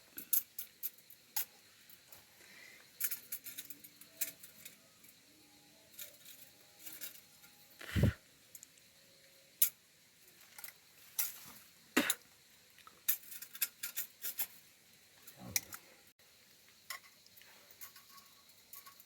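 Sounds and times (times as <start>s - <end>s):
cooking utensils clicking: 16.9s - 19.0s.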